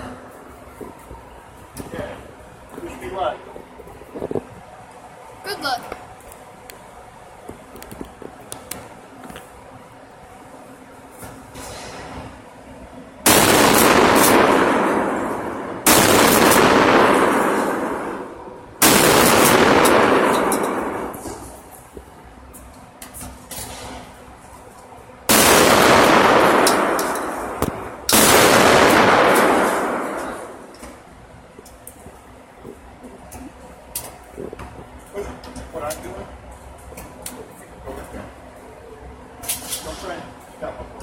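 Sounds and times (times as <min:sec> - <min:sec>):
shotgun shots echoing: 0:13.3 - 0:21.4, 0:25.3 - 0:30.7.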